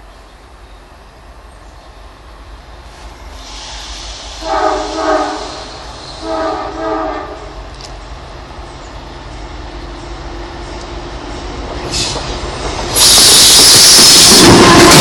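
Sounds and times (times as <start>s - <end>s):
rush of approaching train: 0.0s - 15.0s
locomotive air horn blasts: 4.3s - 7.6s.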